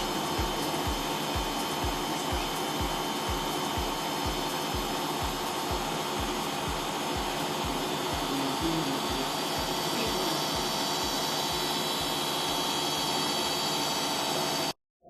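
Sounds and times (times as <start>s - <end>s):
low rhythmic throb: 0.0s - 13.6s
washing machine motor whine: 0.0s - 14.8s.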